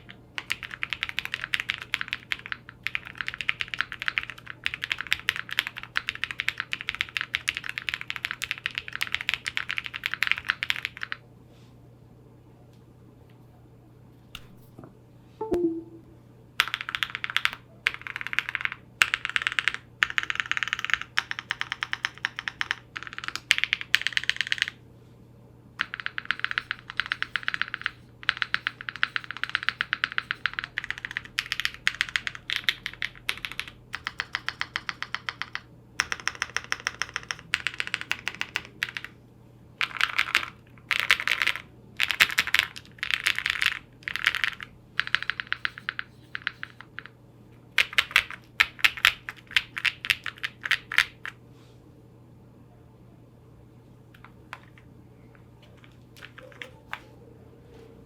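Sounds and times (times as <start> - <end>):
fast typing on mechanical keyboard: 0.0 - 11.2, 16.6 - 24.8, 25.8 - 39.1, 39.8 - 47.1, 47.7 - 51.4, 55.8 - 56.7.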